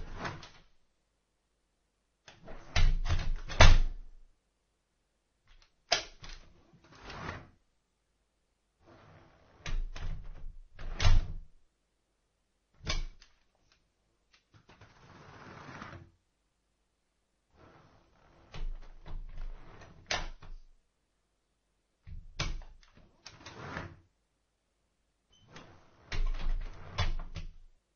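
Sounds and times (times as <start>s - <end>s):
door latch clicks and knocks: 22.1s - 22.9s.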